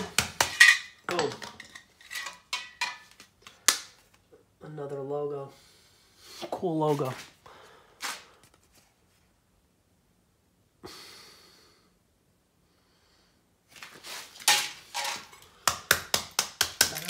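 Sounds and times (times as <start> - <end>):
silver scrap clinking: 0.5 - 3.1, 14.4 - 15.5.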